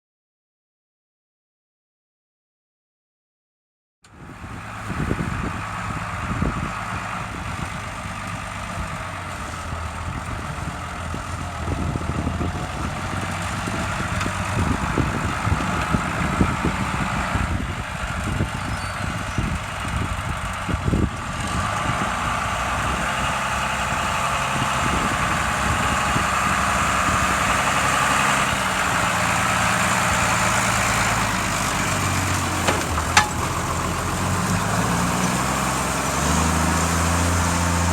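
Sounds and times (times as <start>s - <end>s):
tractor diesel engine under load: 4.1s - 37.9s.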